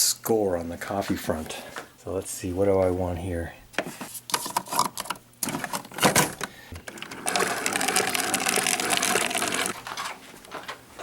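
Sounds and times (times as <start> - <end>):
coffee maker pump humming: 6.4 - 9.8.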